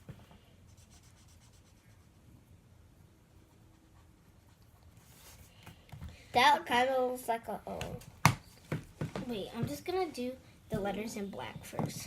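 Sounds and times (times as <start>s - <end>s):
pencil scratching on paper: 0.7s - 2.2s.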